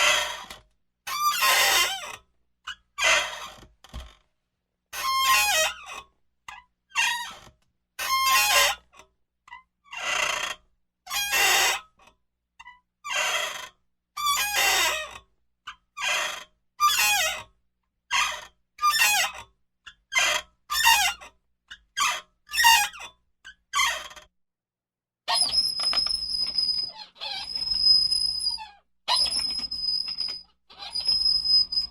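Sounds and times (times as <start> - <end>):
office chair squeaking: 25.3 - 31.9.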